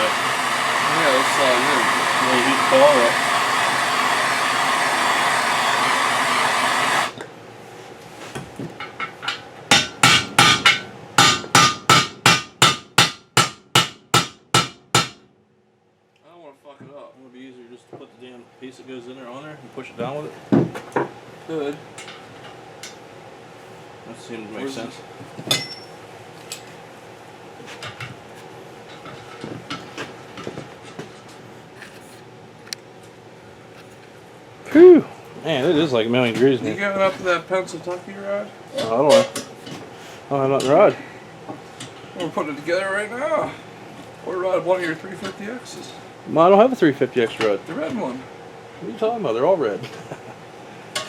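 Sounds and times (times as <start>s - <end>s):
torch hissing: 0.0s - 7.2s.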